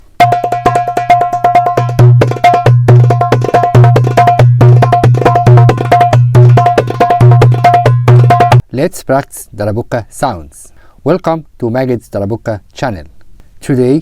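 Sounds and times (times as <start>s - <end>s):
goblet drum played fast: 0.0s - 8.6s.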